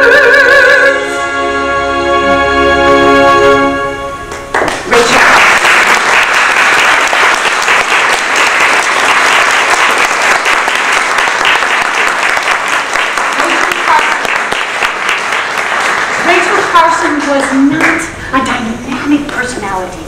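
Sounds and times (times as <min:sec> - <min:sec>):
audience applause: 0:04.4 - 0:18.0.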